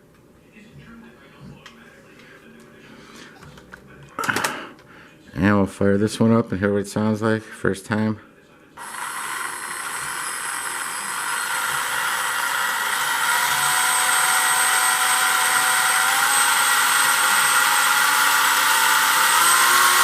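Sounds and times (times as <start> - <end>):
small electric motor whining: 8.8 - 20.0.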